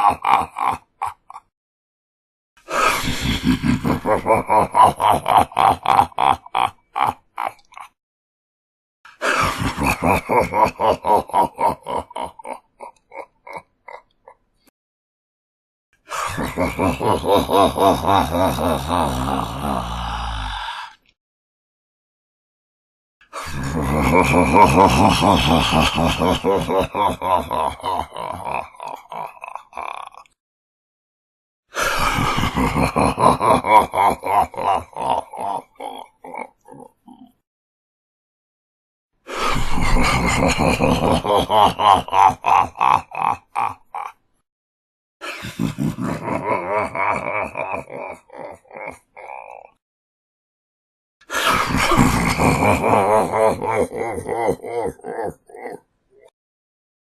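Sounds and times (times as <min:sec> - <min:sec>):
deep evil laugh: 0:00.0 - 0:01.6, 0:02.7 - 0:08.0, 0:09.1 - 0:14.5, 0:16.1 - 0:21.0, 0:23.2 - 0:30.4, 0:31.8 - 0:37.4, 0:39.3 - 0:44.2, 0:45.2 - 0:49.8, 0:51.2 - 0:56.4.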